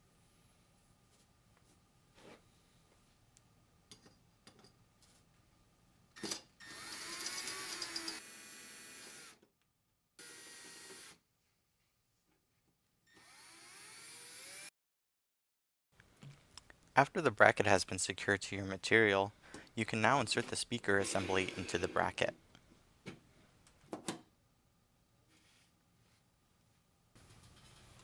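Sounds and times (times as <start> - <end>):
power drill driving screws: 6.2 - 9.4, 10.2 - 11.2, 13.1 - 14.7, 21.0 - 22.1.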